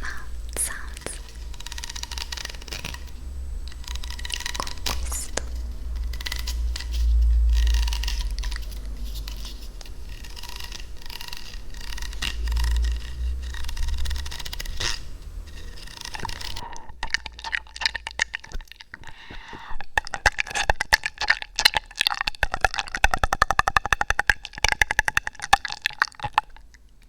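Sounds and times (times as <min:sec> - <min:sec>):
low rumble: 0:00.0 - 0:18.8
close scratching and scraping: 0:00.0 - 0:20.7.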